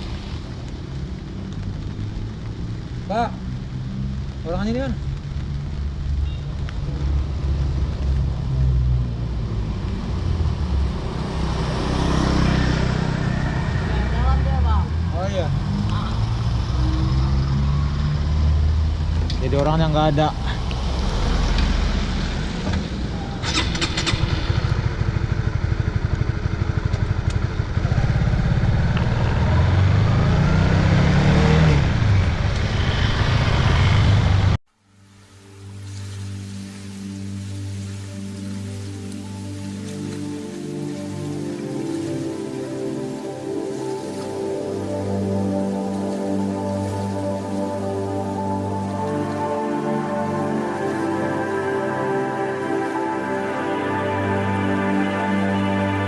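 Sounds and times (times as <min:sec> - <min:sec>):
road and wind noise: 0:00.0 - 0:56.0
motorcycle engine rumbling: 0:09.3 - 0:34.6.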